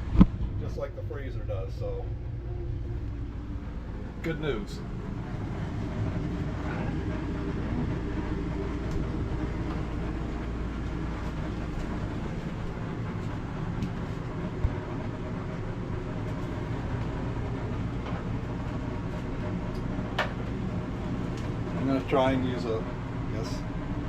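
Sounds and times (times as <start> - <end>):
mechanical hum and rumble: 0.0 - 24.0.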